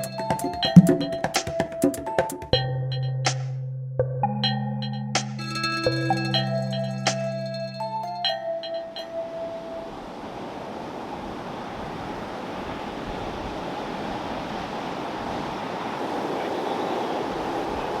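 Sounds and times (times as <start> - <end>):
waves breaking: 8.8 - 18.0.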